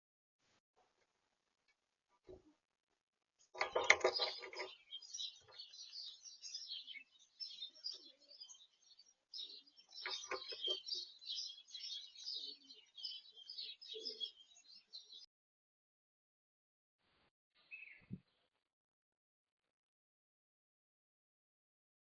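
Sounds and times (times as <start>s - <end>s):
rough low bird sounds: 3.4s - 15.3s, 17.6s - 18.4s
small birds chirping: 3.4s - 15.3s, 17.6s - 18.4s.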